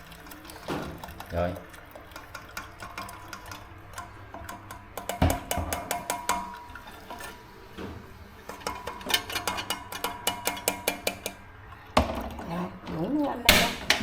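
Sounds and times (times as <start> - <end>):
metal utensil tapping a pot: 2.1 - 7.4, 8.5 - 11.4.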